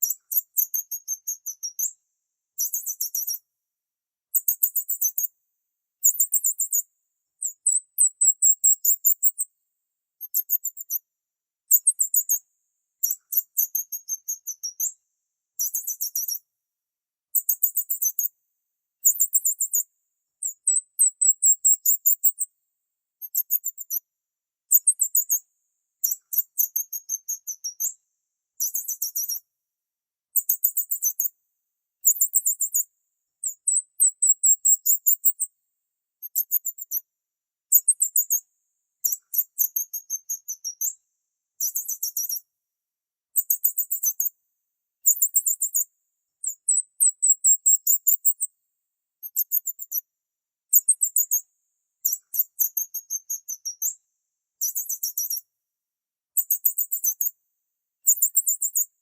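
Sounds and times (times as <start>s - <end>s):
small bird chirping: 0.0s - 3.5s, 4.3s - 5.4s, 6.0s - 9.6s, 10.2s - 11.1s, 11.7s - 16.5s, 17.3s - 18.4s, 19.0s - 22.5s, 23.2s - 24.1s, 24.7s - 28.0s, 28.6s - 29.5s, 30.3s - 31.4s, 32.0s - 35.5s, 36.2s - 37.1s, 37.7s - 41.0s, 41.6s - 42.5s, 43.3s - 44.4s, 45.0s - 48.5s, 49.2s - 50.1s, 50.7s - 54.0s, 54.6s - 55.5s, 56.3s - 57.4s, 58.0s - 59.0s.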